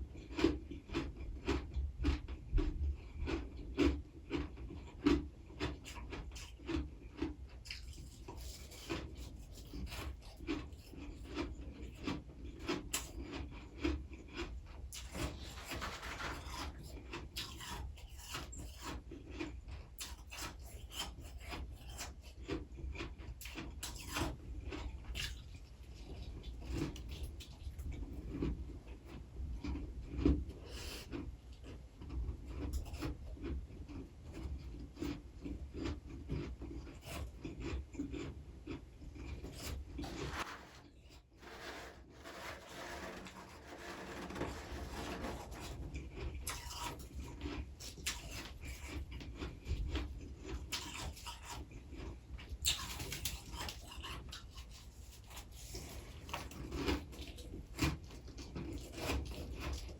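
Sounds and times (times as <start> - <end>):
frost crunching and rasping: 3.2 - 25.4, 35.8 - 59.9.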